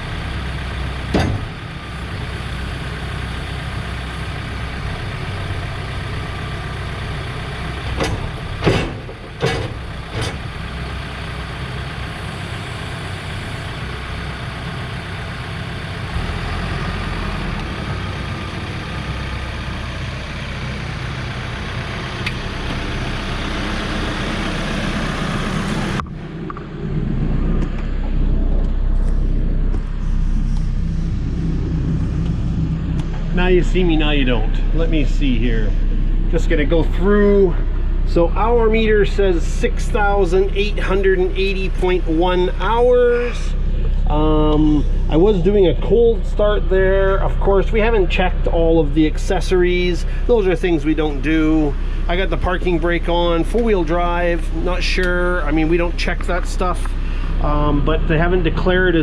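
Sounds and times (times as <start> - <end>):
diesel engine idling: 0.0 - 59.0
sharp knocks: 8.0 - 10.4.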